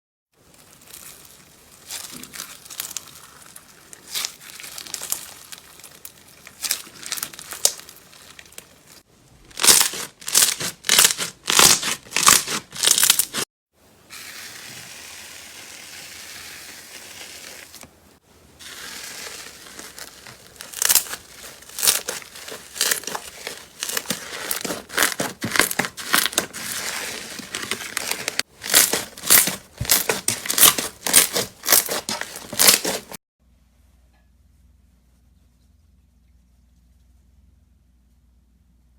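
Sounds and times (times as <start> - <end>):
slime crackling and squelching: 0.4 - 13.4, 18.6 - 33.2.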